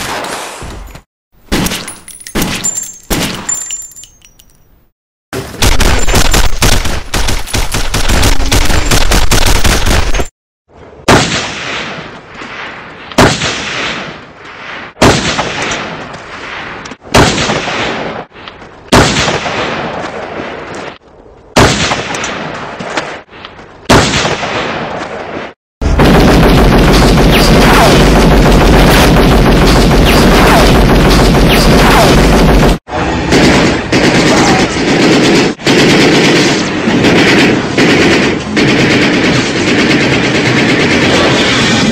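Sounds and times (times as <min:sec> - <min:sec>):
short gunfire bursts with echo: 0:25.8 - 0:41.8
automatic gunfire: 0:26.0 - 0:41.5.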